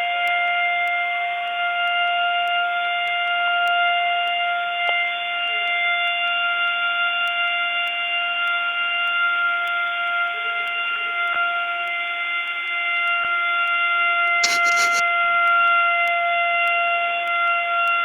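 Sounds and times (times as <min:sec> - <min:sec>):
alarm steady tone over phone: 0:14.4 - 0:15.0.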